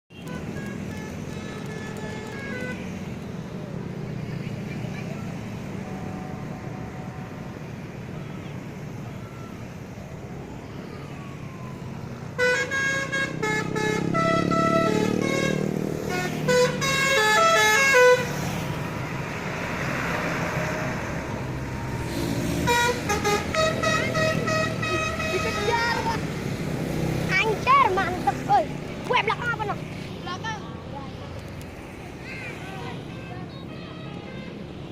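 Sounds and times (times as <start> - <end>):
musical bus horns: 0.1 - 3.2, 5.7 - 8.4, 12.4 - 18.7, 21.3 - 26.3
engines and traffic rumble: 0.1 - 34.9.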